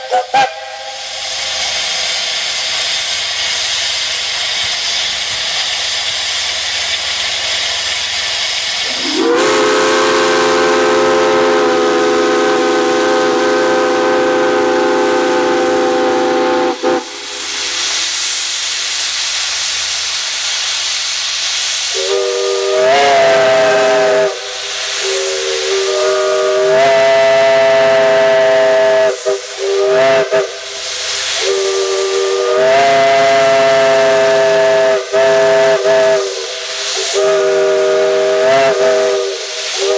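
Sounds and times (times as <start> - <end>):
steam whistle blasts: 0.0 - 2.1, 8.8 - 17.8, 21.9 - 39.9
steam hissing: 0.0 - 39.9.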